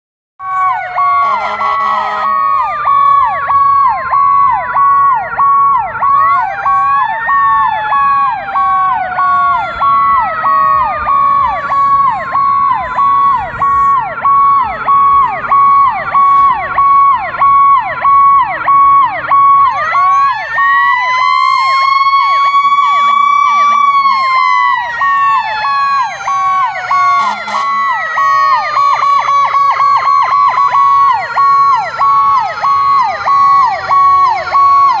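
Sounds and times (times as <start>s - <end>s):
air horn blasts: 0.4s - 2.6s, 23.0s - 24.4s, 26.9s - 28.0s
electronic sirens sweeping: 0.4s - 35.0s
mechanical siren wailing: 0.4s - 35.0s.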